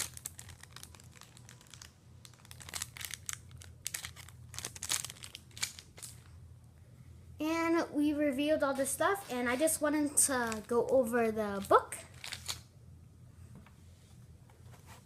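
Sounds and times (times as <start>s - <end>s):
packaging crinkling and rustling: 0.0s - 6.3s, 10.4s - 12.7s
faint steady hum: 0.0s - 15.0s.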